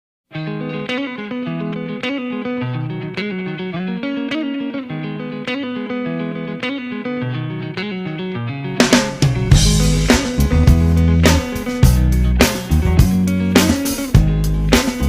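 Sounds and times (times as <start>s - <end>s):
plucked electric guitar: 0.3s - 15.0s
bass line: 8.8s - 15.0s.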